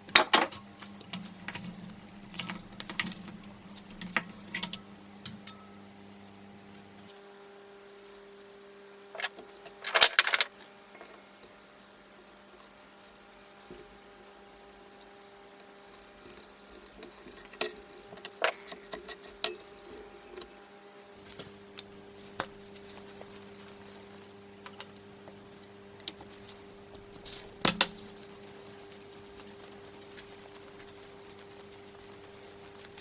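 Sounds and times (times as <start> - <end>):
faint steady hum: 0.0 - 33.0
metal parts and tools clinking: 9.2 - 11.2.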